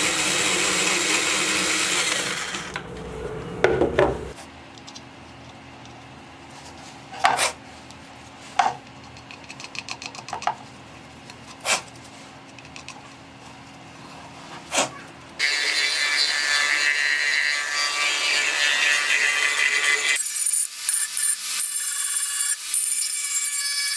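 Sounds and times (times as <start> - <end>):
abrasive cutting or sanding noise: 0.0 - 4.4
low hum: 2.2 - 4.4
tools knocking and tapping on wood: 3.6 - 4.4.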